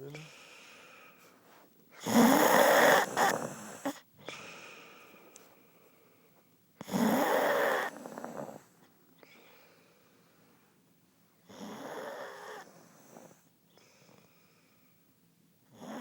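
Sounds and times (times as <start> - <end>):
person snoring loudly: 2.0 - 4.0, 6.8 - 8.6.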